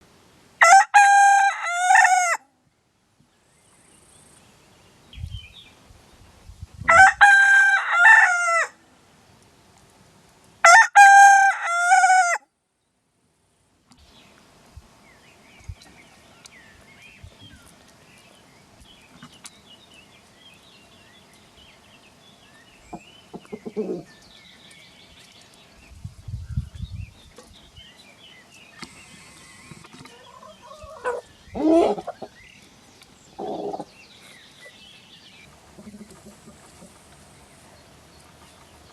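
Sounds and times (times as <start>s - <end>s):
rooster crowing: 0.6s - 2.4s, 6.9s - 8.8s, 10.6s - 12.4s.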